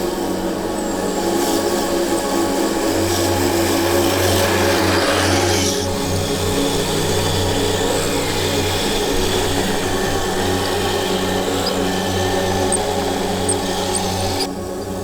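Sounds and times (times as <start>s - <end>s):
electric motor and gearbox whirring: 3.3s - 15.0s.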